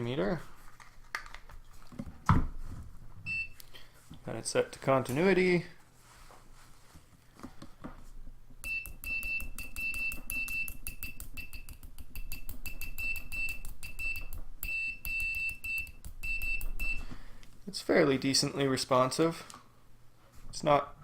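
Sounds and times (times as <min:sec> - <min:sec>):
multimeter continuity buzzer beeping: 0:08.6 - 0:17.1.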